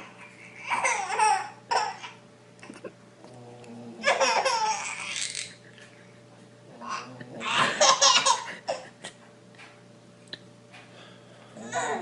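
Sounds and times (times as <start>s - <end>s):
person laughing: 2.6s - 3.0s, 7.0s - 9.3s.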